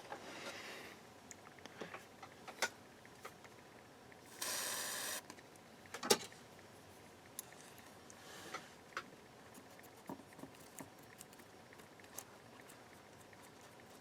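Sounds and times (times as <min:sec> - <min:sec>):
spray can hissing: 0:04.3 - 0:05.2.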